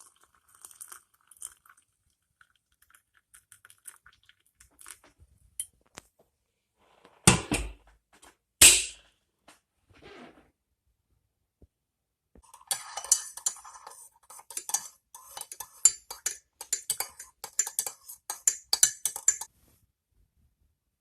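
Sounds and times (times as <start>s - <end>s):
utensil clinking against dish: 12.4s - 19.5s.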